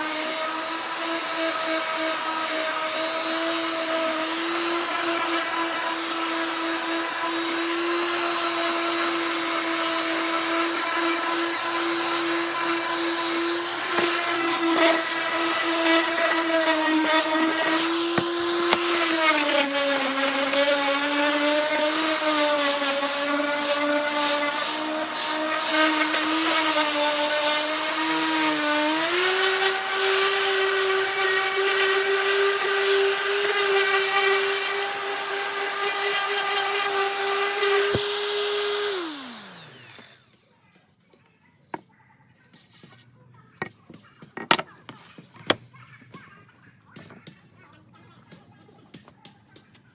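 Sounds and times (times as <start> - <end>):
orbit sander motor whine: 0.0 - 40.4.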